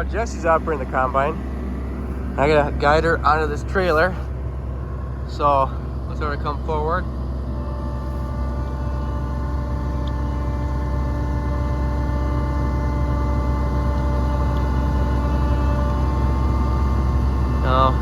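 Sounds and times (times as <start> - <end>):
combine harvester diesel engine: 0.0 - 18.0.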